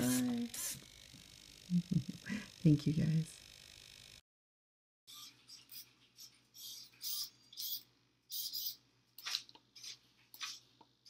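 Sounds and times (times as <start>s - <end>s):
servo motors whirring: 5.1s - 10.5s.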